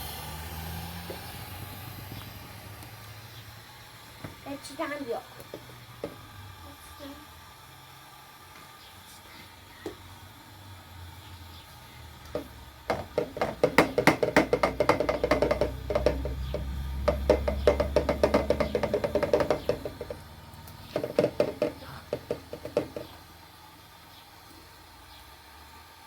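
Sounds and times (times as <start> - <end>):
sharp wood-like knocking: 12.4 - 20.2, 20.9 - 23.1.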